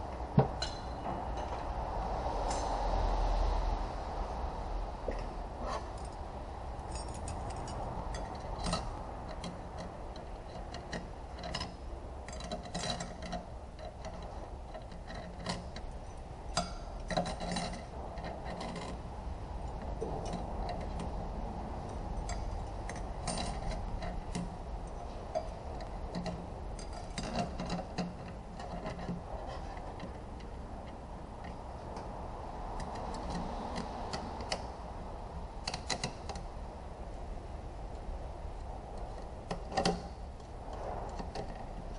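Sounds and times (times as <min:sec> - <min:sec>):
steady low hum: 0:00.0 - 0:41.9
light metallic clicks and clinks: 0:00.5 - 0:01.7, 0:02.4 - 0:03.0, 0:05.9 - 0:19.0, 0:21.8 - 0:32.1.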